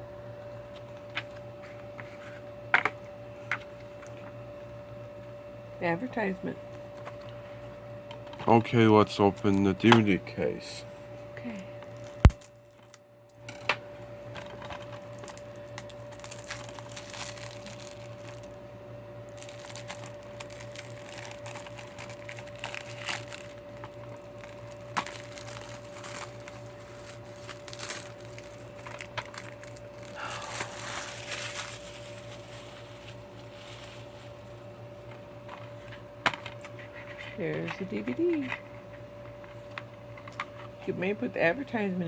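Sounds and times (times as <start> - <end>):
faint hum: 0.0 - 42.0
plastic case clicking and crinkling: 19.4 - 31.4.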